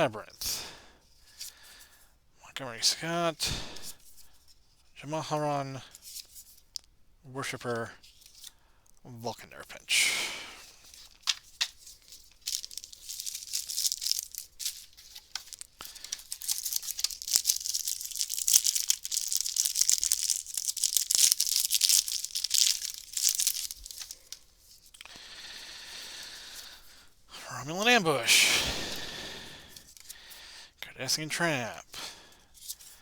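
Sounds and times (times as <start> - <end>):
crinkling wrapper: 10.7 - 25.2
wrapper being torn open: 10.9 - 24.4.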